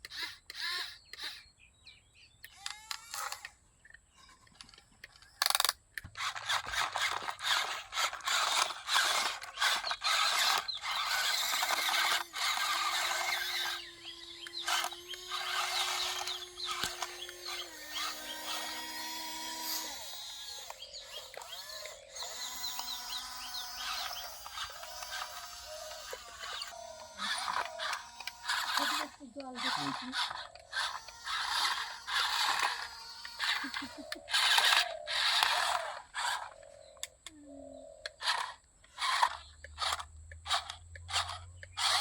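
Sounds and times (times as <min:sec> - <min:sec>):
small electric motor whining: 0:00.0 - 0:01.6, 0:02.4 - 0:37.3, 0:38.0 - 0:42.0
birds chirping: 0:00.1 - 0:05.5, 0:06.2 - 0:42.0
soil and grit scraping: 0:06.2 - 0:36.6.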